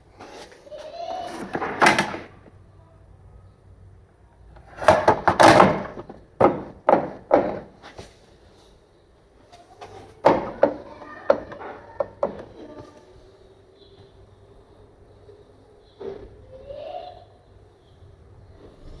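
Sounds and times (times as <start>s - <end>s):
knocks of hard objects: 1.3s - 2.4s, 4.6s - 8.2s, 9.9s - 12.8s.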